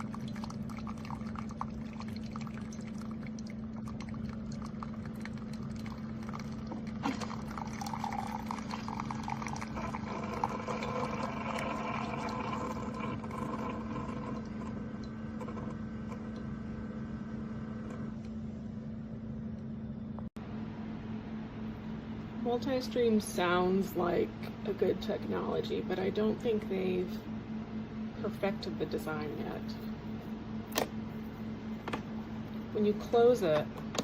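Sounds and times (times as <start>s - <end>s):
coffee streaming into cup: 0.0s - 16.4s
coffee maker humming: 0.0s - 34.0s.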